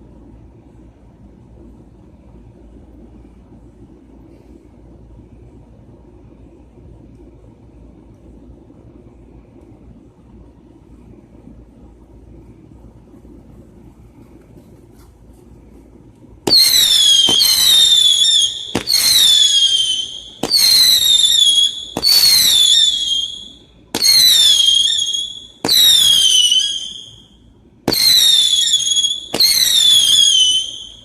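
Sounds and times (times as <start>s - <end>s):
whistling firework shots: 16.5s - 31.0s.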